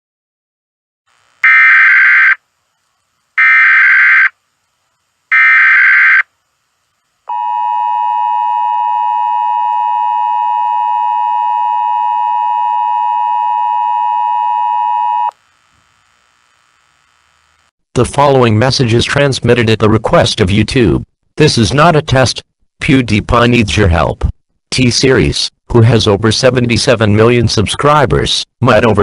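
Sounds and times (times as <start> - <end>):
digital data tone bursts: 1.4 - 2.4, 3.4 - 4.4, 5.3 - 6.3.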